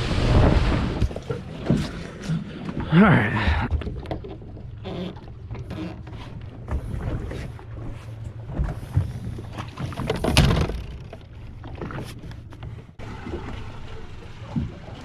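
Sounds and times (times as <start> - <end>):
boat engine humming: 0.0 - 15.0
knocks and rattles: 8.5 - 12.0.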